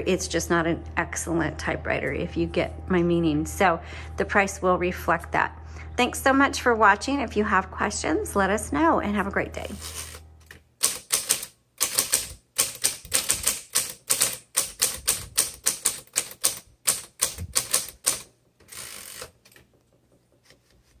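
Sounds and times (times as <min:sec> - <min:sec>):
typewriter rasp: 0:09.7 - 0:10.2, 0:10.8 - 0:19.6
typewriter keys striking: 0:10.8 - 0:19.7.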